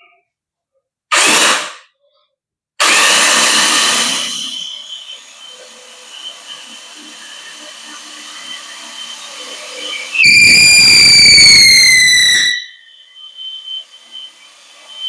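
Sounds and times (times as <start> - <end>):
hammer drill whining: 10.2 - 12.8.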